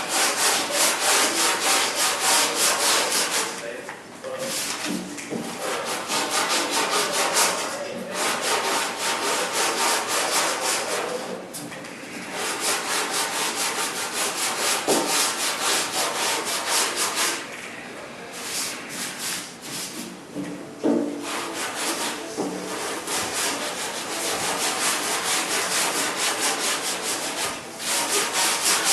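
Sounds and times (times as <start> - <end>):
sandpaper rubbing by hand: 0.0 - 3.6, 5.6 - 11.2, 12.3 - 17.4, 21.2 - 28.9.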